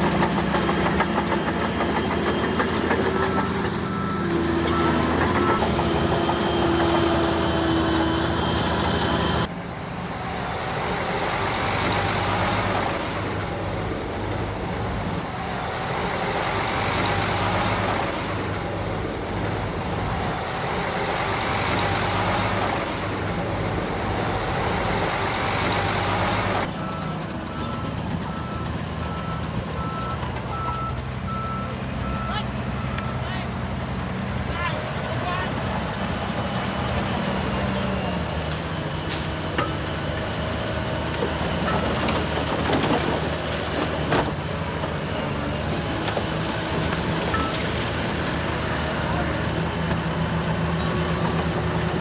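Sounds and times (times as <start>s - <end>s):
bulldozer diesel engines working: 0.0s - 52.0s
reversing alarm beeping: 2.0s - 5.7s, 26.7s - 33.3s.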